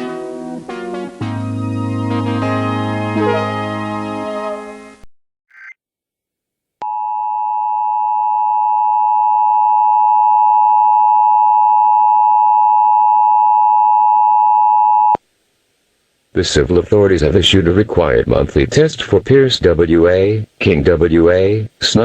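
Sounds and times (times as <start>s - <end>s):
faint chirp: 5.5s - 5.8s.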